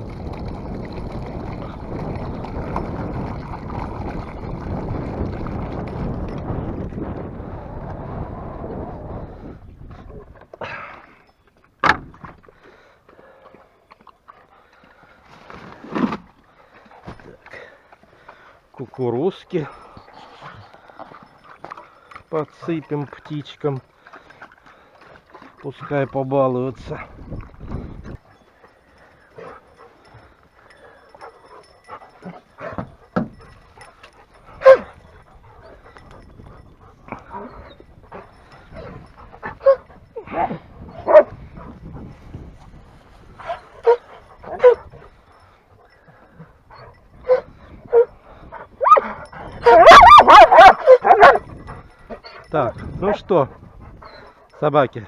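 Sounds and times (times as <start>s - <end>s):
dogs whining: 27.2s - 42.1s, 43.4s - 54.6s
dog yelping: 34.6s - 35.0s, 37.2s - 41.4s, 43.4s - 44.9s, 46.8s - 48.1s, 48.8s - 51.6s.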